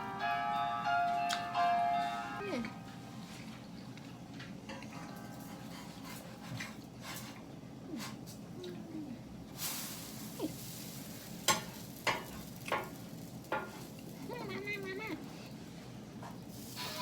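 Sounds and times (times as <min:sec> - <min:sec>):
cakes sizzling in a pan: 0:09.6 - 0:15.4, 0:16.4 - 0:17.0.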